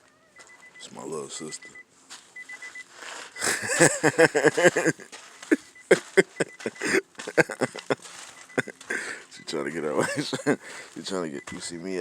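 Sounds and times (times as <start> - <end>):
person laughing hard: 3.4 - 8.0, 8.6 - 9.2, 10.0 - 10.9.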